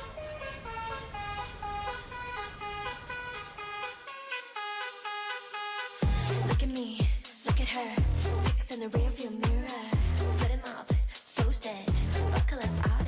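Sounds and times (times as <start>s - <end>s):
car horn honks melody: 0.0s - 6.0s
low rumble: 6.0s - 6.7s, 8.0s - 8.6s, 10.0s - 10.6s, 11.9s - 13.0s.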